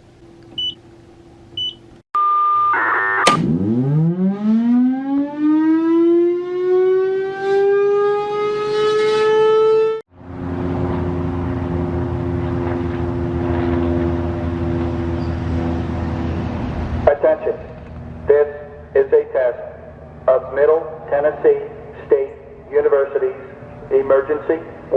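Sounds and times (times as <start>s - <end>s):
warning siren wailing: 2.4s - 17.0s.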